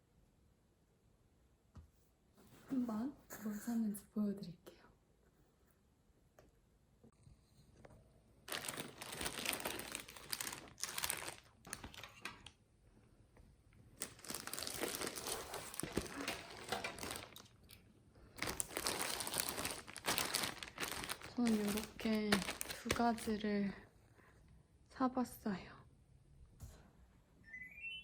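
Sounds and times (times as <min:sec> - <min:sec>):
packaging crinkling and rustling: 0:08.4 - 0:12.6, 0:14.0 - 0:23.4.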